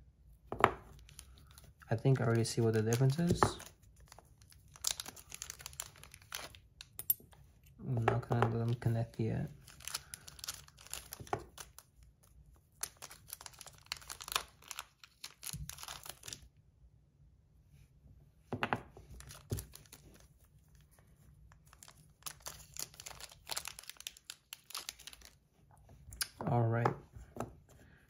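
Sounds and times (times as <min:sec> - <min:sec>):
packaging tearing and crinkling: 0:00.9 - 0:06.9, 0:09.6 - 0:16.4, 0:21.5 - 0:25.4.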